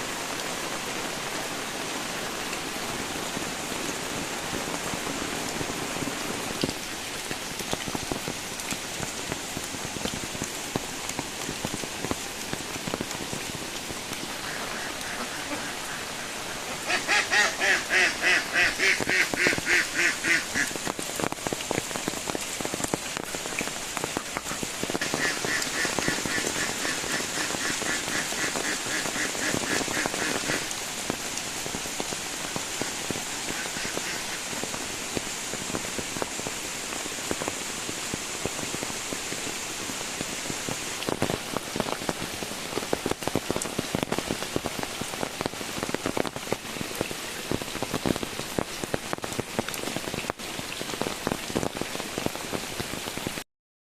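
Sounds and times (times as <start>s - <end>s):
heavy rain falling: 0.0s - 53.4s
drips and splashes: 1.4s - 53.4s
repeated animal calls: 14.4s - 20.7s.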